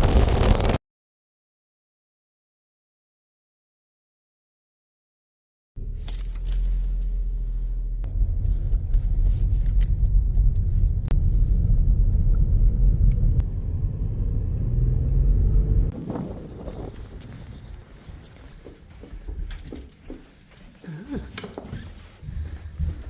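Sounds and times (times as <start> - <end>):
car engine and road rumble: 5.8 - 20.2
light rattling and clicking: 16.8 - 23.0.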